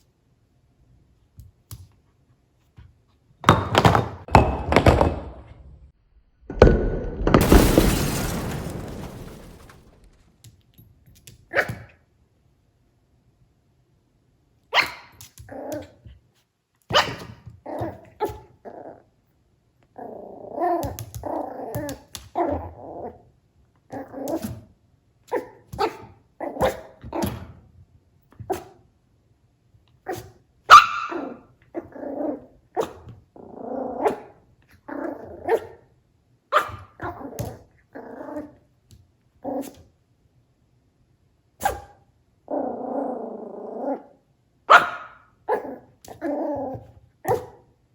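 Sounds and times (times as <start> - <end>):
puppy barking and growling: 14.8 - 16.1, 20.0 - 23.3, 25.3 - 27.4, 30.0 - 35.9, 36.5 - 38.6, 41.6 - 47.7.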